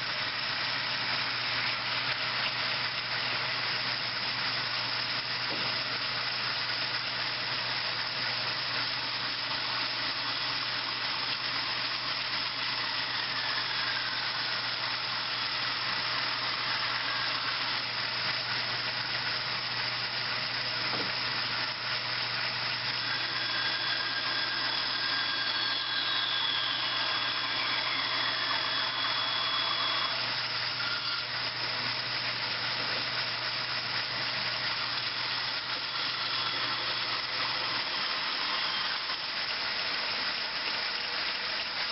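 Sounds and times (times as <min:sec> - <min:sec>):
band saw running: 0:00.0 - 0:41.9
faint falling whistles: 0:22.9 - 0:31.4.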